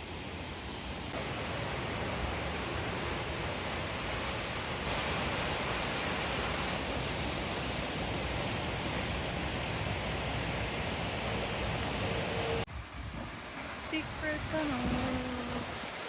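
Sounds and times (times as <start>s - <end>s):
waterfall rushing: 0.0s - 12.7s.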